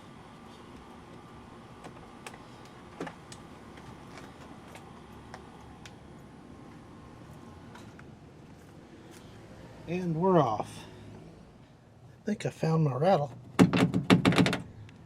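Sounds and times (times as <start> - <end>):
steady background hum: 0.0 - 15.0
loud knock: 13.6 - 14.6.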